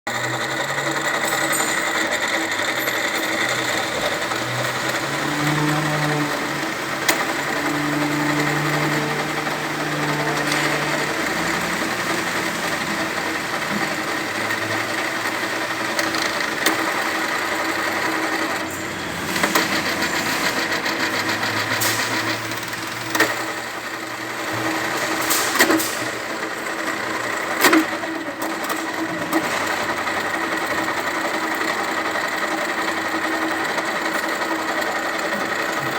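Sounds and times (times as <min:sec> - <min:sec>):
drill press motor humming: 0:00.1 - 0:35.9.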